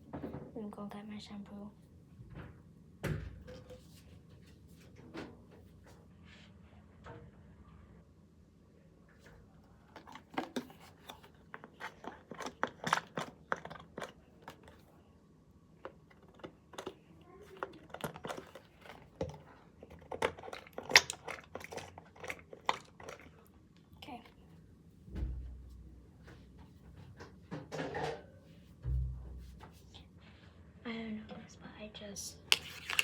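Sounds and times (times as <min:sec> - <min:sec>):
plastic bottles being handled: 0:09.9 - 0:14.9, 0:15.8 - 0:23.3, 0:32.5 - 0:33.0.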